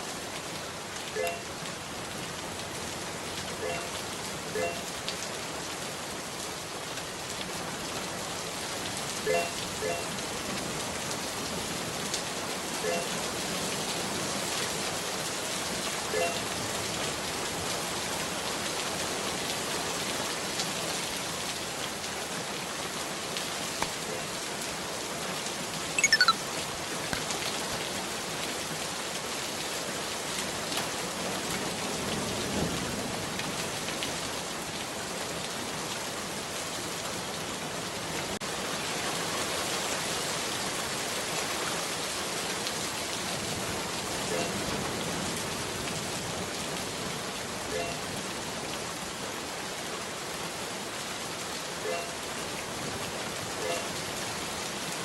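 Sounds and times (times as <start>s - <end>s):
sharp falling squeak with clicks: 26.0s - 26.4s
short high chirps: 26.0s - 26.4s.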